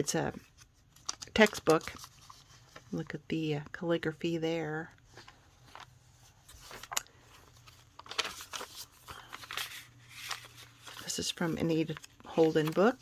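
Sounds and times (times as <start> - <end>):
paper rustling and taps: 0.6 - 2.4, 6.5 - 13.0.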